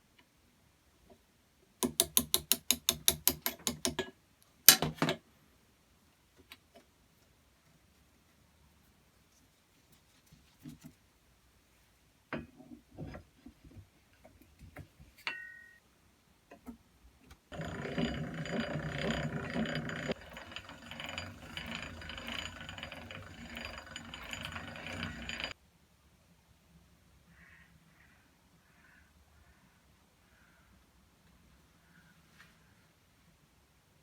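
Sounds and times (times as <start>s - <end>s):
gear and ratchet clatter: 1.8s - 4.0s, 17.5s - 25.6s
drill clicks and knocks: 1.8s - 4.1s, 17.5s - 25.6s.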